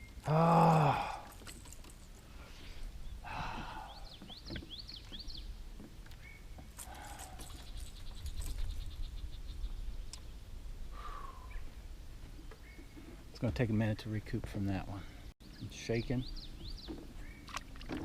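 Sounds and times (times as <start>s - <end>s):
small birds chirping: 2.5s - 13.4s, 15.4s - 17.8s.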